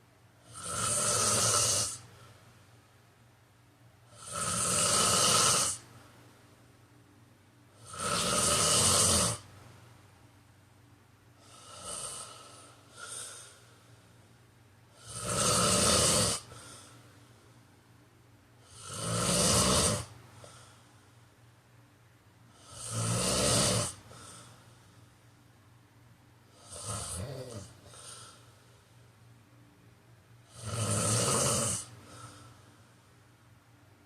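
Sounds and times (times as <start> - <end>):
man snoring: 0.4 - 2.1, 4.1 - 5.8, 7.8 - 9.5, 11.4 - 13.7, 14.9 - 17.0, 18.6 - 20.6, 22.5 - 24.5, 26.5 - 28.5, 30.5 - 32.5
faint breaths: 11.3 - 15.2, 16.4 - 18.0, 20.1 - 21.6, 23.9 - 25.7, 26.4 - 29.4, 31.7 - 33.5.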